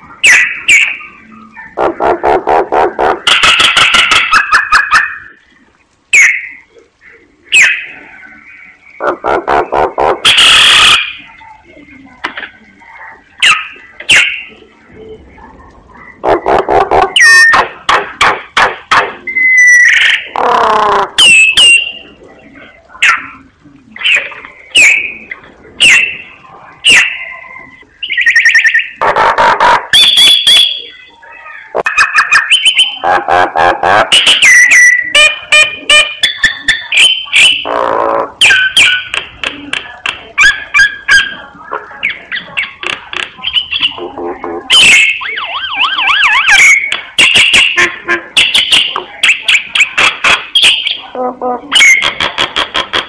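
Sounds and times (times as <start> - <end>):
bird wavering whistle: 19.2 - 20.3, 32.0 - 33.0
bird harsh chattering and clicks: 46.2 - 51.0.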